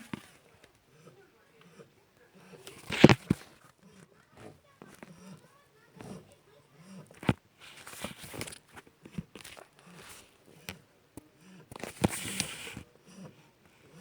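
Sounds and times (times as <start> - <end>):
puppy snoring: 0.0 - 7.8, 9.6 - 14.0
sharp clicks and rustles: 2.6 - 3.7, 7.1 - 10.8, 11.7 - 12.8.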